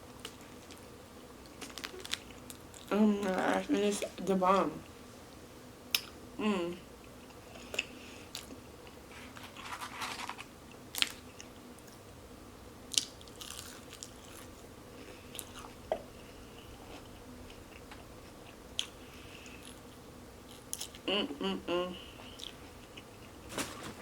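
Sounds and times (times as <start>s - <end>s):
crunchy chewing: 0.1s - 2.9s, 12.9s - 21.0s
person biting and chewing: 12.9s - 14.6s.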